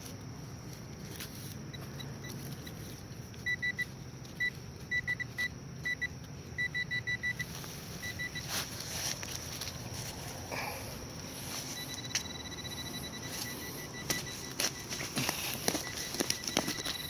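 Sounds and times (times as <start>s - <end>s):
metal detector beeps: 3.4s - 8.7s, 11.1s - 17.0s
rustle: 7.4s - 10.5s.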